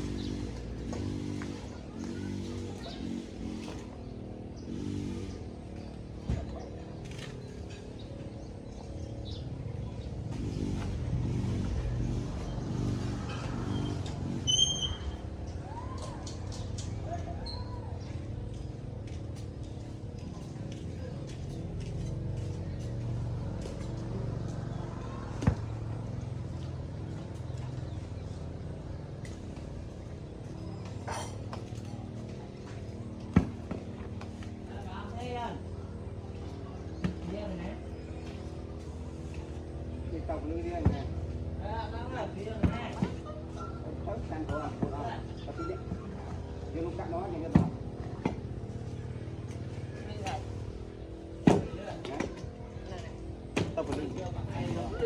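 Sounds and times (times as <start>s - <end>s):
engine humming: 0.0s - 55.0s.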